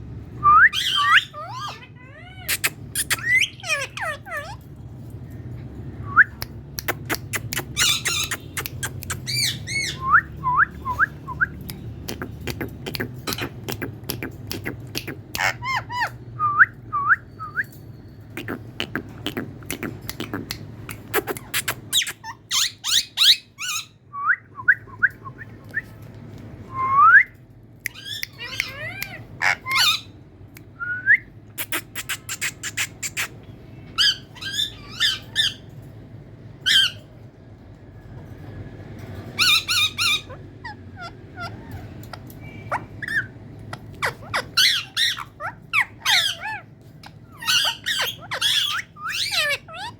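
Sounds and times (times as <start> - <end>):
parrot squawking and whistling: 0.4 - 4.6, 6.0 - 11.6, 15.1 - 17.6, 18.5 - 25.8, 27.9 - 30.2, 30.8 - 35.7, 36.6 - 37.1, 39.3 - 49.9.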